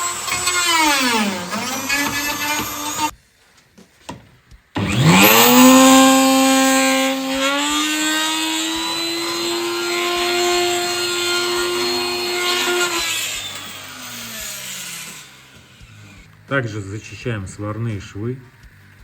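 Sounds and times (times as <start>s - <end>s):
power tool motor whirring: 0.0s - 3.1s, 4.8s - 16.5s.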